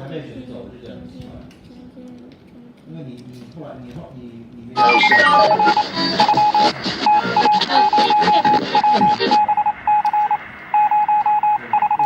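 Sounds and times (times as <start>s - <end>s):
short electronic beeps: 4.8s - 12.0s.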